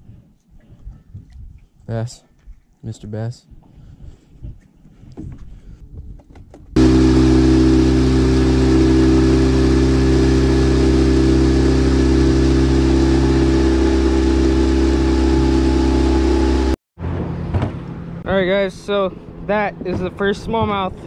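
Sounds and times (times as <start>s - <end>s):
engine running steadily: 6.8s - 18.2s.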